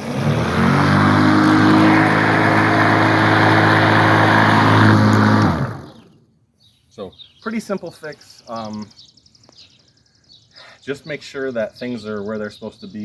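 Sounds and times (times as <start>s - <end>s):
electric lawn mower humming: 0.0s - 6.2s.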